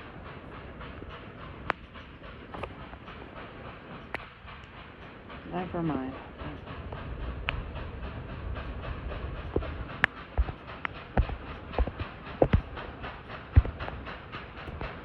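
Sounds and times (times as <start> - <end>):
steam locomotive exhaust beating: 0.0 - 15.0
sharp clicks: 0.4 - 15.0.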